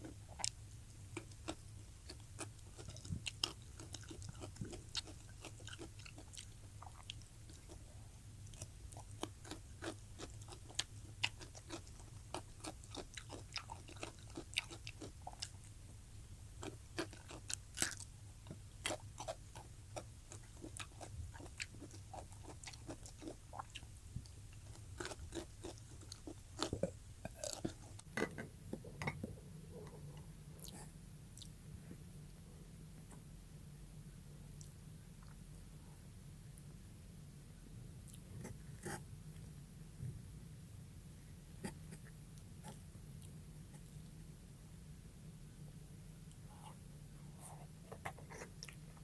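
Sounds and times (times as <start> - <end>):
person chewing food: 0.0 - 16.0, 16.6 - 28.2
low steady hum: 0.0 - 49.0.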